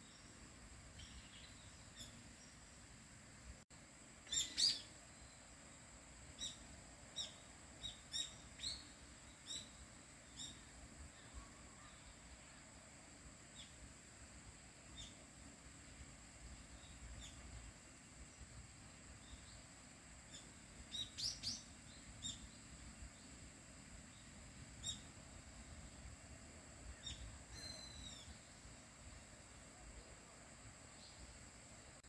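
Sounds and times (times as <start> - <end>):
small bird chirping: 0.0 - 2.7, 4.2 - 5.4, 6.4 - 12.1, 13.5 - 13.8, 14.9 - 15.2, 16.8 - 17.5, 20.3 - 23.3, 24.1 - 25.2, 26.9 - 28.6.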